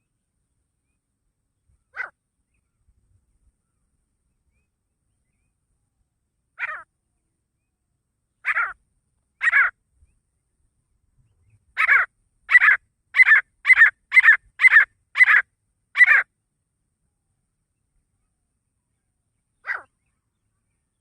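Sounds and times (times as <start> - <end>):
francolin calling: 6.6 - 6.9, 8.4 - 8.8, 9.4 - 9.8, 11.7 - 16.3, 19.6 - 20.4.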